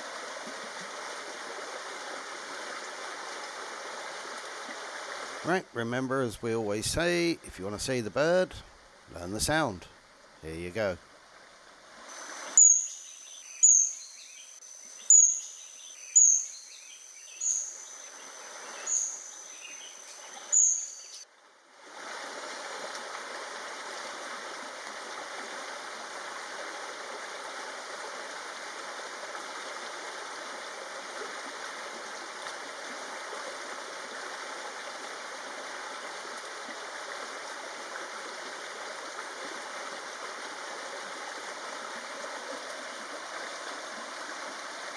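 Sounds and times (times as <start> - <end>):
thin steady high tone: 12.1 - 21.2
kingfisher calling: 12.2 - 21.2.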